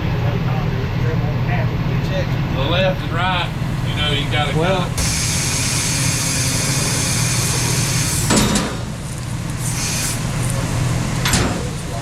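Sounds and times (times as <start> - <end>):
vehicle engine running: 0.0 - 12.0
short clunks: 4.8 - 9.3, 11.2 - 12.0.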